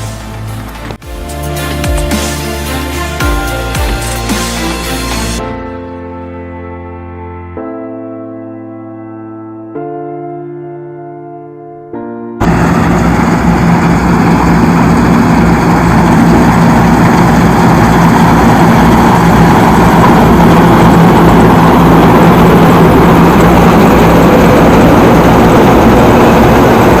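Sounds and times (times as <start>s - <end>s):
diesel engine running: 0.0s - 5.4s, 12.4s - 27.0s
low throb: 12.4s - 27.0s
threshing machinery rushing: 12.4s - 27.0s.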